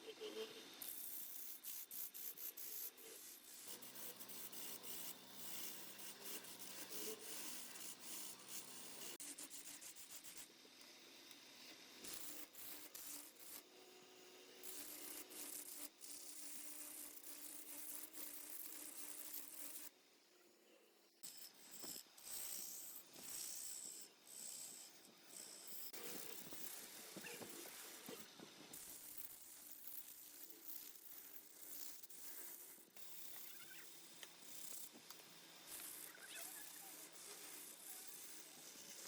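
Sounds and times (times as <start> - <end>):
tool scraping turning wood: 21.6 - 28.8.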